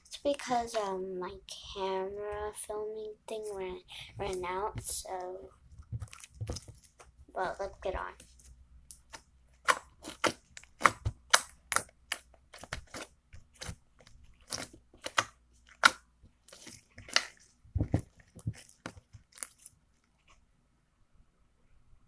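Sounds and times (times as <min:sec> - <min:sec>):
slime clicking and popping: 0:08.9 - 0:13.8, 0:14.4 - 0:19.7.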